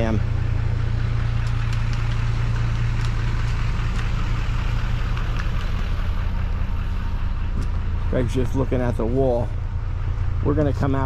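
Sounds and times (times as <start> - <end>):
small excavator engine running: 0.0 - 11.0
faint clicks: 1.4 - 4.2.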